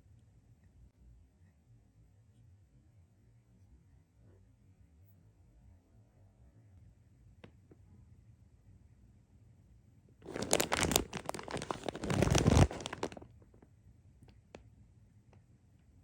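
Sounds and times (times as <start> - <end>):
plastic or paper crinkling: 10.3 - 13.3.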